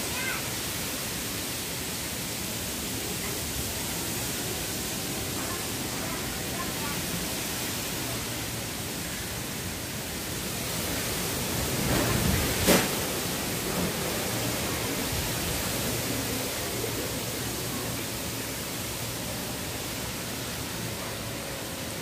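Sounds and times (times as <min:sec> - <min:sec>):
strong wind blowing: 0:09.6 - 0:18.5.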